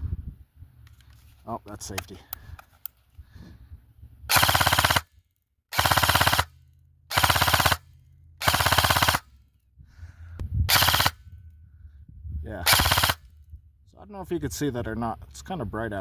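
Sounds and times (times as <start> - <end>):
airsoft gun firing bursts: 4.3 - 5.1, 5.7 - 9.3, 10.7 - 11.2, 12.7 - 13.2.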